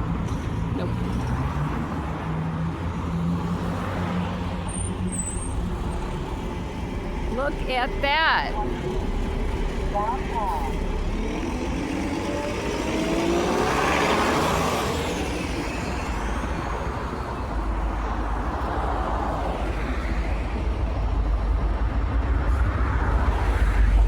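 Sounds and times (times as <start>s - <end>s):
cars passing: 0.0s - 24.0s
steady low rumble: 4.9s - 13.8s, 15.2s - 24.0s.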